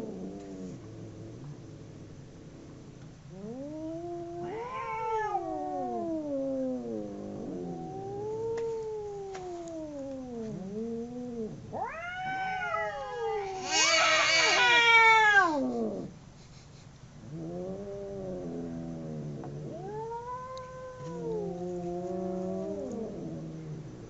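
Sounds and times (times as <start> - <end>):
cats yowling in fight: 3.3 - 16.1, 17.3 - 23.6.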